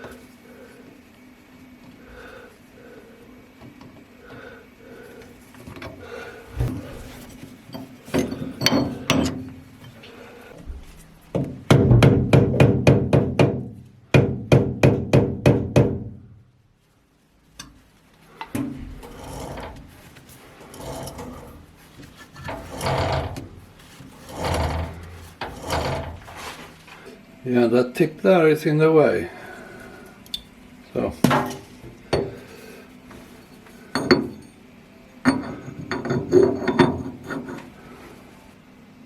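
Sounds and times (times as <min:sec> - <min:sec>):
scraping and handling noises: 0:05.0 - 0:11.6, 0:17.5 - 0:27.3, 0:30.4 - 0:34.6.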